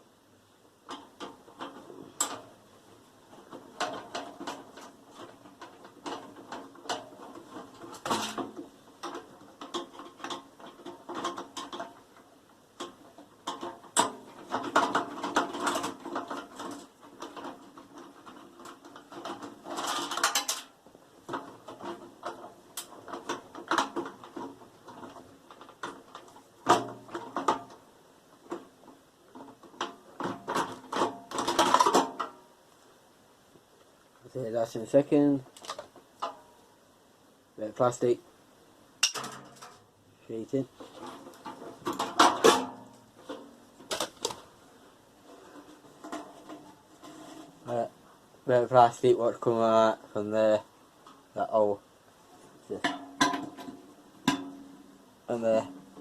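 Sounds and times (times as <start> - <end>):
metal parts clicking and scraping: 12.8 - 27.7, 29.3 - 32.4.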